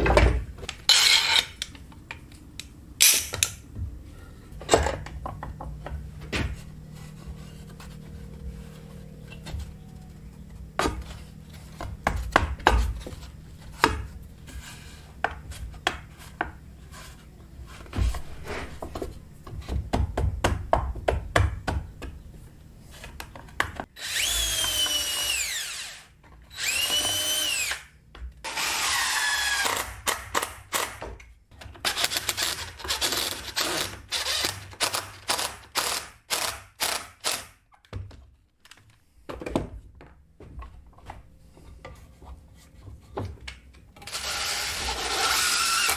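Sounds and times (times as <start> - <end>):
wooden pieces knocking: 4.6 - 6.6
power drill whining: 24.0 - 27.9, 28.5 - 29.9, 31.9 - 37.4, 44.1 - 45.9.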